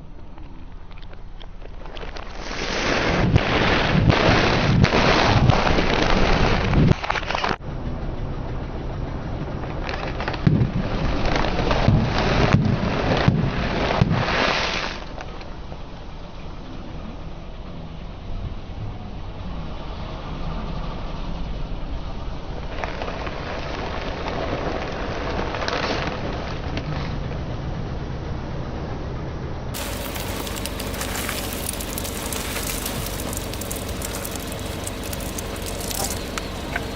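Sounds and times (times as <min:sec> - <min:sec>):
low rumble: 0:29.8 - 0:36.9
tyre crushing brittle objects: 0:29.8 - 0:36.9.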